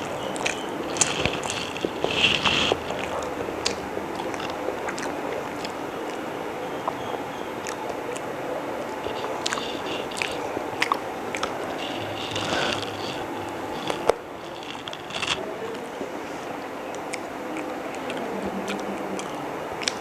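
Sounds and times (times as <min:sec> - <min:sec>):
person chewing food: 0:00.0 - 0:15.4, 0:16.9 - 0:20.0
wet mouth clicks and smacks: 0:08.9 - 0:15.4, 0:16.9 - 0:20.0.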